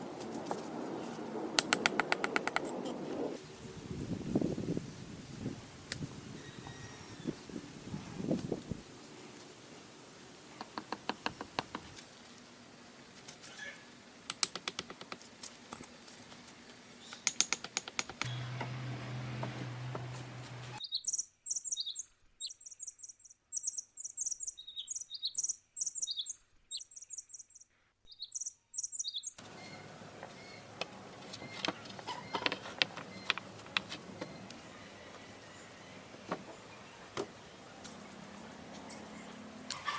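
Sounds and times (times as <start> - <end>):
low steady hum: 18.2 - 20.8
small bird chirping: 20.6 - 39.9.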